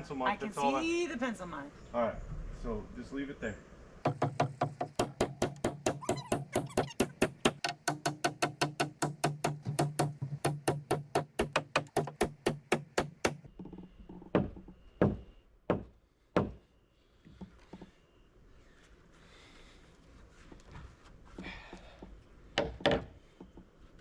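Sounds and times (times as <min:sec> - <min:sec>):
heavy hammer blows: 0:04.1 - 0:13.5
power driver knocking: 0:04.1 - 0:13.5.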